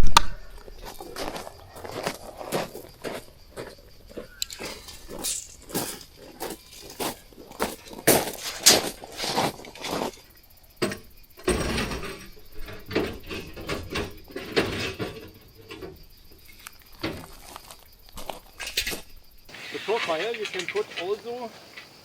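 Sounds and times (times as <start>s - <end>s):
scraping rustle: 4.4s - 10.3s, 11.4s - 22.0s
knocks clicks and clatter: 10.8s - 16.0s, 19.5s - 22.0s.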